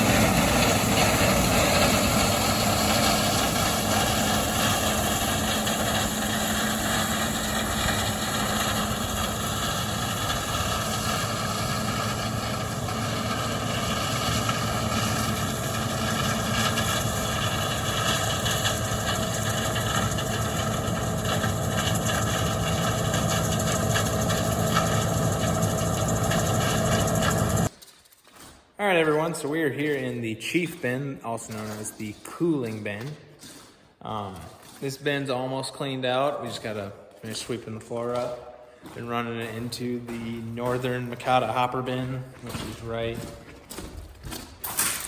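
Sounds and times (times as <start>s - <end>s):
harvester engine droning: 0.0s - 27.7s
mechanical whine: 0.0s - 27.7s.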